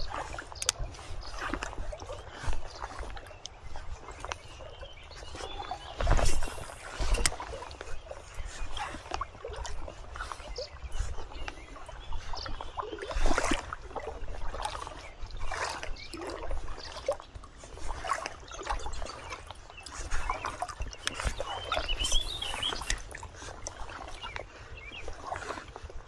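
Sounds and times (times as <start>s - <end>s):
bird chirp: 4.5s - 7.4s, 19.8s - 23.0s.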